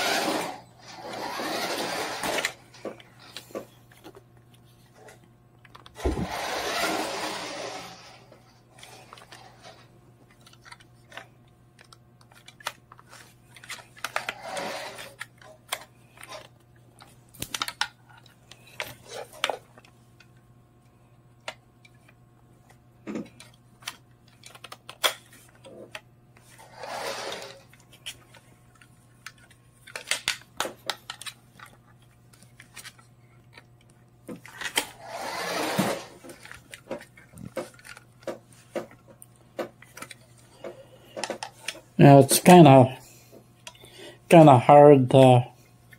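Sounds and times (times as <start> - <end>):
electric motor whirring: 0.0 - 2.6, 6.0 - 8.3, 14.1 - 15.2, 26.6 - 27.7, 35.0 - 36.2.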